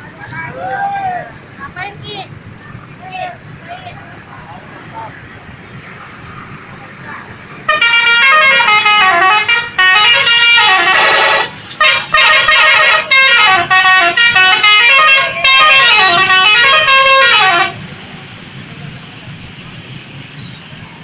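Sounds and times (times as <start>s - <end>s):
traffic noise: 0.0s - 21.0s
musical bus horn tune: 7.7s - 17.8s.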